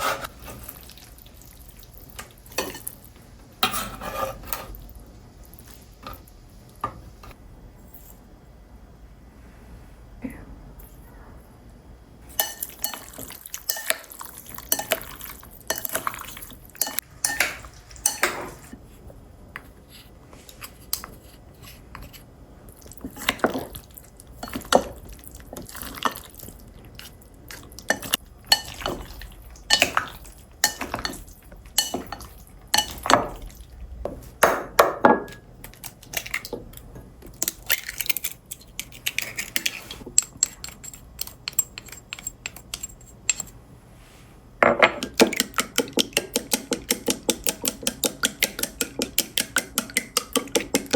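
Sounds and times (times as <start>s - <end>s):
utensils clinking against dishes: 2.2s - 3.0s, 3.6s - 4.8s, 12.3s - 18.8s, 27.7s - 33.5s, 37.4s - 43.6s.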